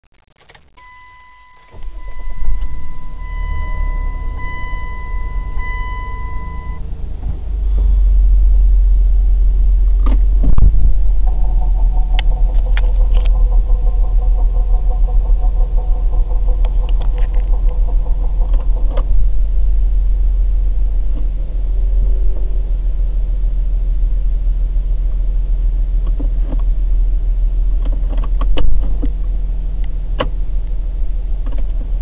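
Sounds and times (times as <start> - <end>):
car engine starting and running: 0.0 - 32.0
electronic chime tone: 0.8 - 6.8
rapid regular knocking: 10.4 - 19.5.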